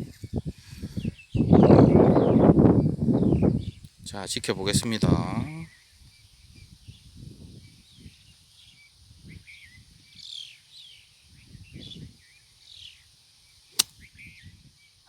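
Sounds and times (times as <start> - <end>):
wind rumbling on microphone: 0.0 - 8.4, 11.3 - 12.3, 13.8 - 14.8.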